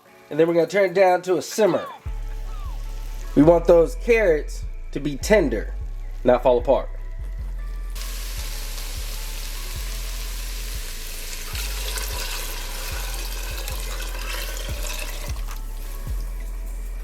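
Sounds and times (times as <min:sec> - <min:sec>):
liquid pouring into a pot: 0:11.3 - 0:16.4.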